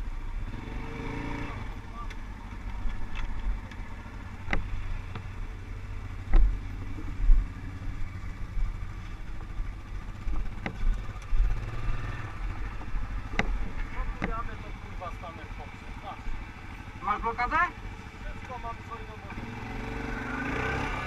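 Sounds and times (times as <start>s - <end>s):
atv engine running: 0.0s - 21.0s
low thumps: 6.2s - 7.9s, 12.7s - 14.7s.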